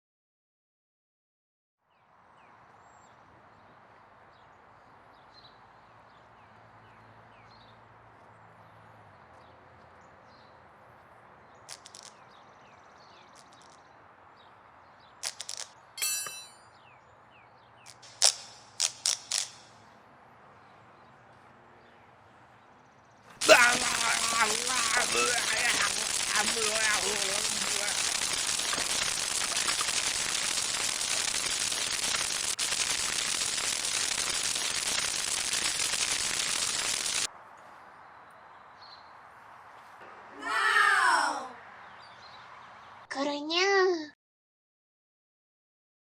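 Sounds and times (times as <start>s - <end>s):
metallic clicks and clangs: 16.0s - 16.6s
background hiss: 23.3s - 37.3s.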